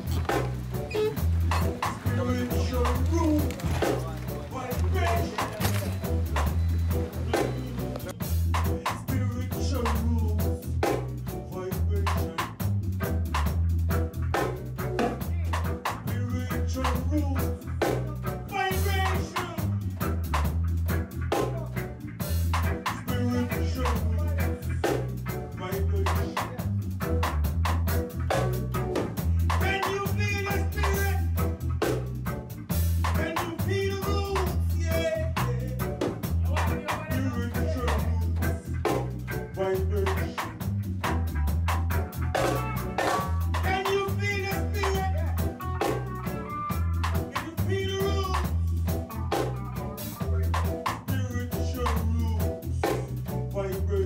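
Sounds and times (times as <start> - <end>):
band music with heavy bass: 0.0 - 54.0
drum kit beat: 0.0 - 54.0
person singing: 0.9 - 12.6, 15.2 - 19.9, 22.8 - 26.8, 29.2 - 31.4, 33.0 - 40.6, 43.0 - 46.3, 47.2 - 54.0.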